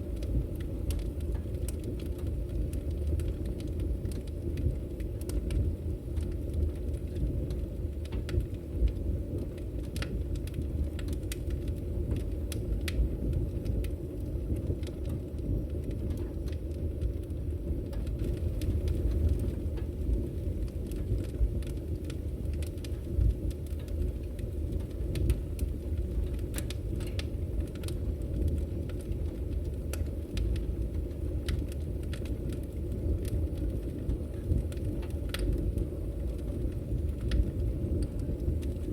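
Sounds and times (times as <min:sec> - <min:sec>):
fire crackling and popping: 0:00.0 - 0:38.9
fire rumbling: 0:00.0 - 0:38.9.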